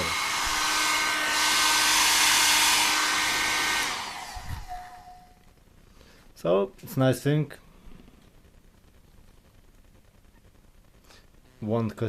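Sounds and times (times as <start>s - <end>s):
hair dryer blowing: 0.0s - 5.4s.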